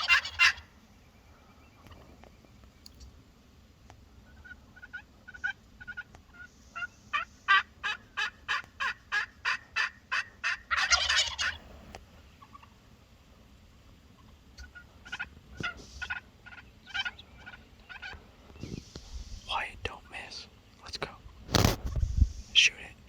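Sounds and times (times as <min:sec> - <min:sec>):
turkey rattling gobble: 0:00.0 - 0:00.7, 0:04.2 - 0:11.6, 0:12.4 - 0:12.8, 0:14.1 - 0:18.8
turkey yelps: 0:00.0 - 0:00.7, 0:04.2 - 0:11.6, 0:12.4 - 0:12.8, 0:14.2 - 0:18.2.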